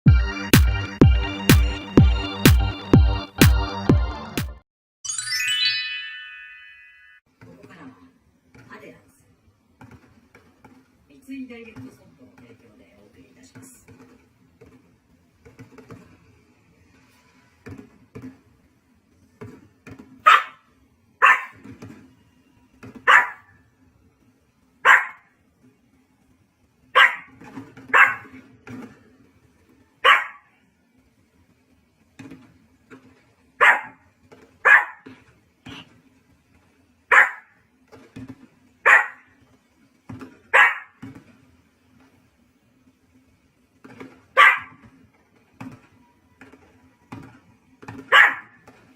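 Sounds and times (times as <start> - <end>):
dog barking: 20.2 - 20.6, 21.2 - 21.6, 23.1 - 23.5, 24.8 - 25.3, 27.0 - 27.3, 27.9 - 28.4, 30.0 - 30.5, 33.6 - 34.0, 34.6 - 35.0, 37.1 - 37.5, 38.8 - 39.2, 40.5 - 41.0, 44.4 - 44.8, 48.1 - 48.6.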